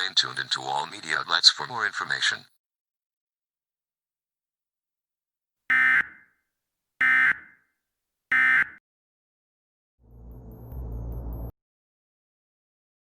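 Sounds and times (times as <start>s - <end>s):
low rumble: 10.0s - 11.5s.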